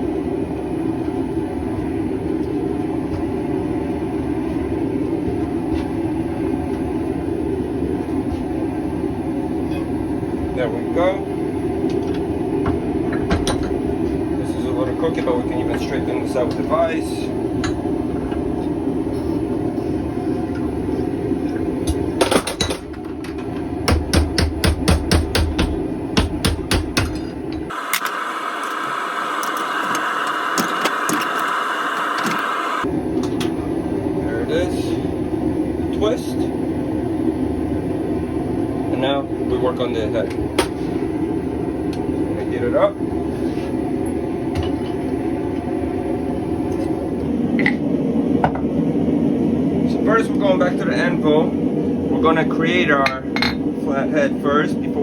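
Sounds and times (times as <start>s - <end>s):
forge rushing noise: 27.7s - 32.9s.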